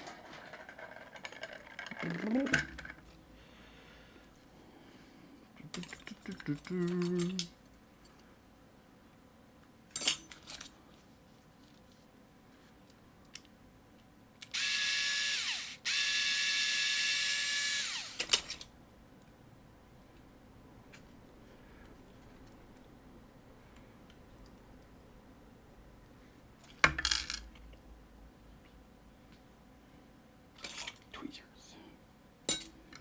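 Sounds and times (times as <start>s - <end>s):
power drill whining: 14.5s - 18.3s.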